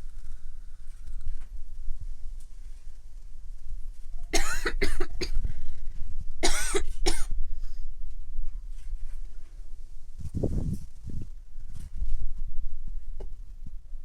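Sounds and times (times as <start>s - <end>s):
woman coughing: 4.4s - 5.4s, 6.4s - 7.3s.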